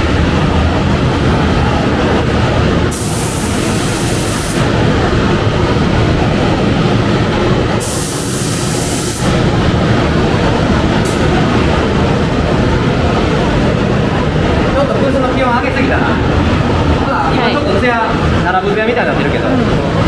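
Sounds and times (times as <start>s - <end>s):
paint booth airflow rumble: 0.0s - 20.0s
spray gun hissing: 2.9s - 4.8s, 7.8s - 9.5s.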